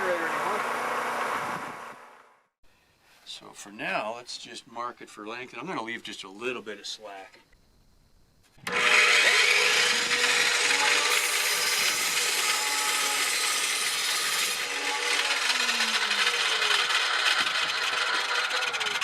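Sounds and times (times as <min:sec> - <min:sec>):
electric saw cutting wood: 0:08.6 - 0:19.0.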